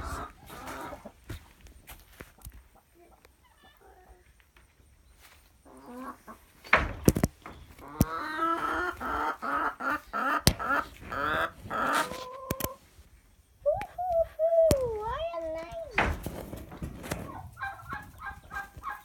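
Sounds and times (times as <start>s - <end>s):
chickens clucking and squawking: 0.0s - 19.0s
sharp knocks: 16.0s - 18.0s.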